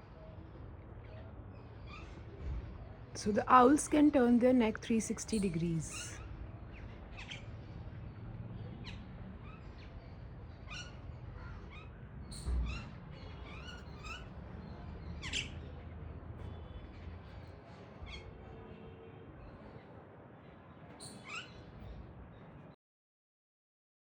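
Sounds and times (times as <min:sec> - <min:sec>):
birds chirping: 0:03.2 - 0:07.4
bird screeches: 0:10.7 - 0:14.3, 0:21.0 - 0:21.6.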